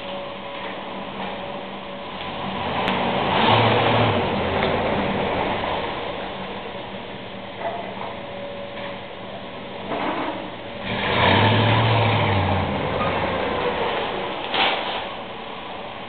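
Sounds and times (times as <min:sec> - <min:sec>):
engine running: 0:00.0 - 0:16.0.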